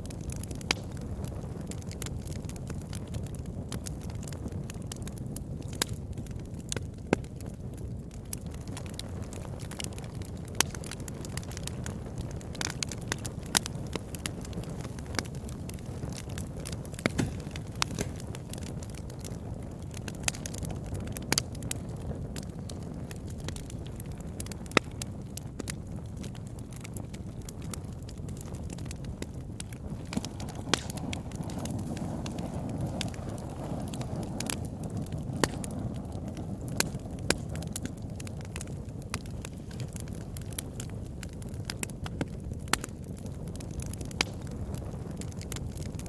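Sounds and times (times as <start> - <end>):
campfire crackling and popping: 0.0 - 46.0.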